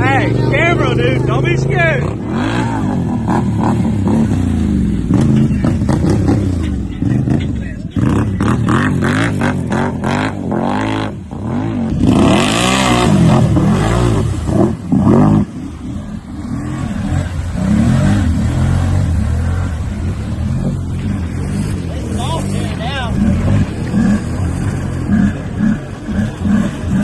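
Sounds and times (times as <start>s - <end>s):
vehicle engine revving: 0.0s - 27.0s.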